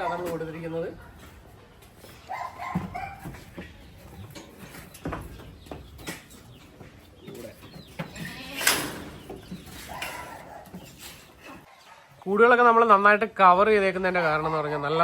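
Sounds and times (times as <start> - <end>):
knocks and clatter: 0.3 - 11.7
goats bleating: 8.0 - 9.0.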